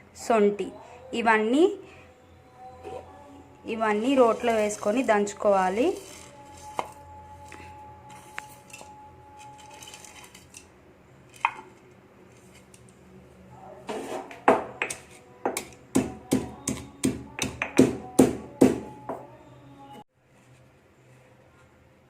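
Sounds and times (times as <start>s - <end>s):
pestle pounding in mortar: 14.5s - 18.9s.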